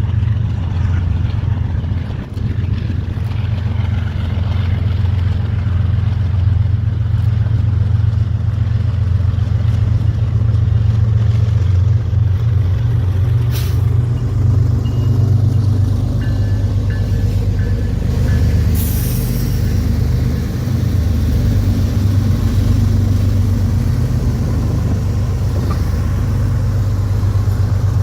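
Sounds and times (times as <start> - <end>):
freight train rumbling: 0.0 - 28.0.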